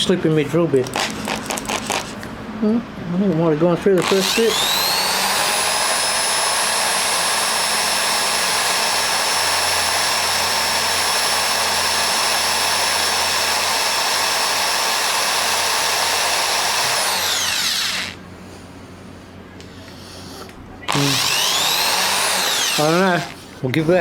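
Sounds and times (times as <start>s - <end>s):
electric drill boring into metal: 0.8s - 2.2s, 4.0s - 18.2s, 20.9s - 23.4s.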